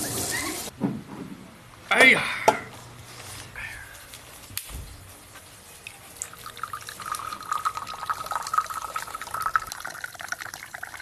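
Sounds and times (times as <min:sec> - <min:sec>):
liquid pouring into container: 0:06.2 - 0:11.0.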